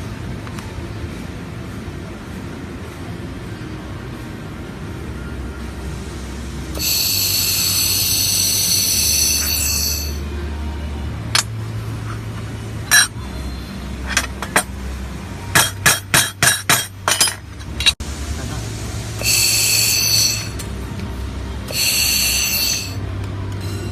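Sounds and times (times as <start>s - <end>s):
low machine hum: 0.0s - 23.9s
laser welding hiss and whistle: 6.8s - 10.2s, 19.2s - 20.6s, 21.7s - 23.0s.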